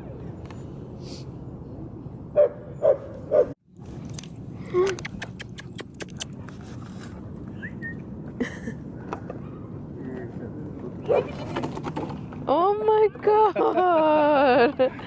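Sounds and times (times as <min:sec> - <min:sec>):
outdoor background noise: 0:00.0 - 0:15.0
dog barking: 0:02.4 - 0:03.6, 0:11.1 - 0:11.3.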